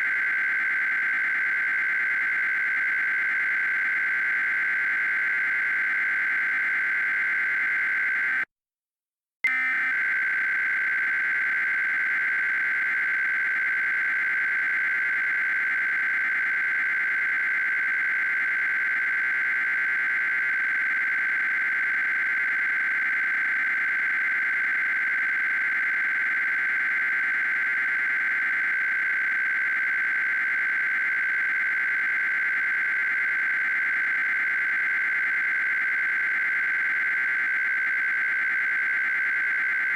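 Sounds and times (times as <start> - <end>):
buzzing digital data tone: 9.5 - 39.9.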